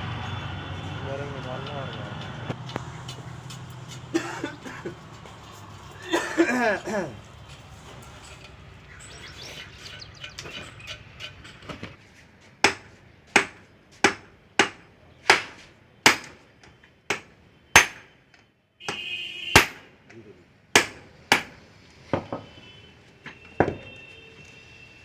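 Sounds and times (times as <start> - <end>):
metal scrape: 7.6 - 12.2
hammer striking metal: 12.6 - 16.4, 17.1 - 18.1, 19.6 - 19.9, 20.8 - 21.6.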